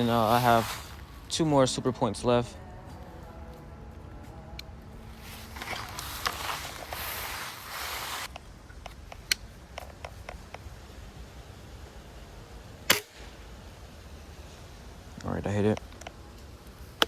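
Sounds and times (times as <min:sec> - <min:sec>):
air rifle handling rustle: 0:00.0 - 0:01.4, 0:04.6 - 0:11.0
air rifle clicks: 0:08.3 - 0:10.7, 0:12.8 - 0:13.3.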